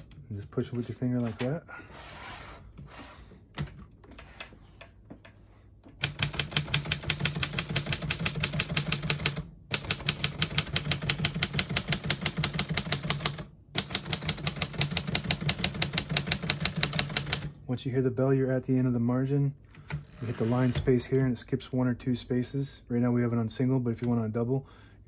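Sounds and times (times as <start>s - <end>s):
typewriter keystrokes: 6.0s - 17.5s.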